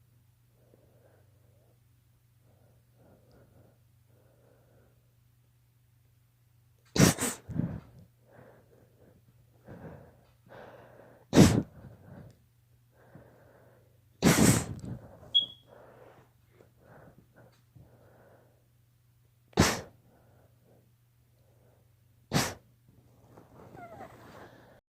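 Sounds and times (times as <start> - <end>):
girl sneezing: 7.0 - 7.4, 11.4 - 11.7, 14.2 - 14.7, 19.6 - 19.9, 22.3 - 22.6
sniffs and breaths: 7.0 - 12.4, 13.0 - 18.6, 19.6 - 24.8.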